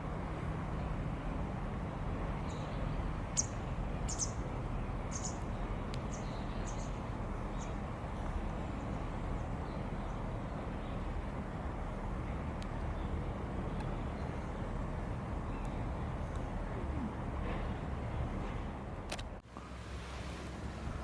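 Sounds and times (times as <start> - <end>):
small birds chirping: 2.2 - 11.3, 11.9 - 17.1.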